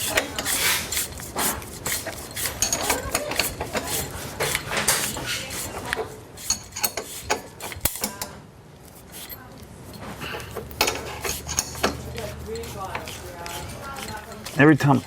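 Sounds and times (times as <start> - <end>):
metal tools clinking: 1.8 - 5.8, 6.4 - 8.3, 9.0 - 12.7.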